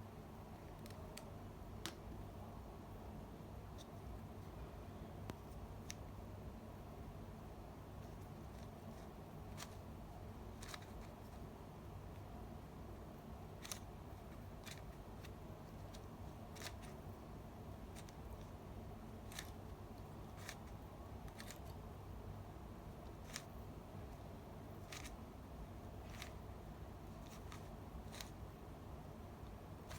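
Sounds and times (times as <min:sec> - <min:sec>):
steady low hum: 0:00.0 - 0:29.9
plastic cube clicks: 0:10.6 - 0:11.4, 0:13.6 - 0:17.0, 0:19.2 - 0:19.6, 0:20.3 - 0:21.8, 0:23.1 - 0:23.5, 0:24.8 - 0:25.2, 0:26.0 - 0:26.4, 0:27.2 - 0:28.4.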